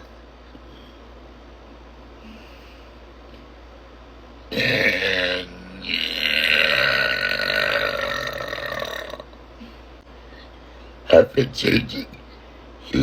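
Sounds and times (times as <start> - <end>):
woman burping: 4.5 - 9.3.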